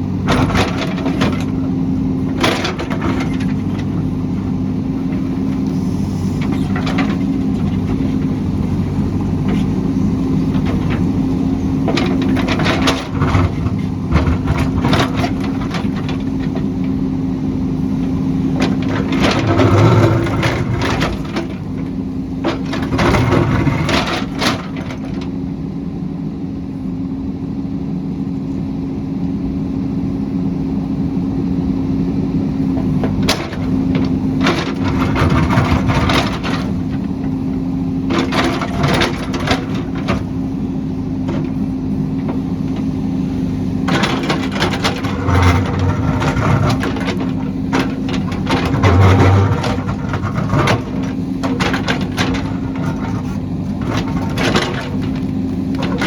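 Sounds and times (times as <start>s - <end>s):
diesel engine running: 0.0s - 56.0s
digging cracks and clatters: 32.8s - 56.0s.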